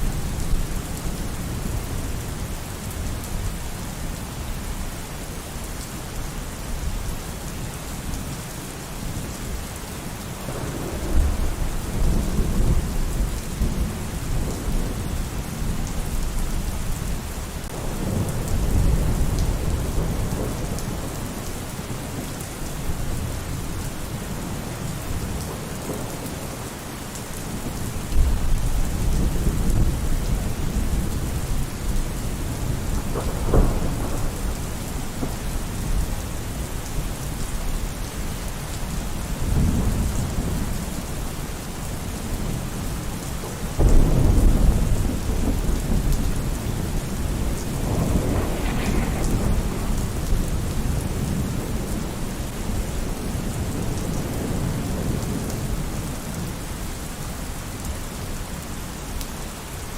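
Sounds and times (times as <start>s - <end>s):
steady rain: 0.0s - 59.9s
thunder rumbling: 10.4s - 16.8s, 27.6s - 37.8s, 43.4s - 56.5s.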